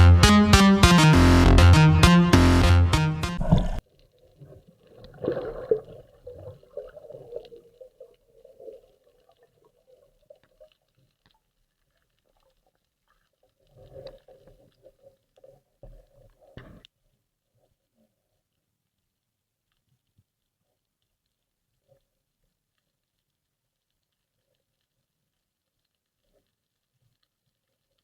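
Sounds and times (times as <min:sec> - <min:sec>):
water sloshing: 0:03.4 - 0:16.8.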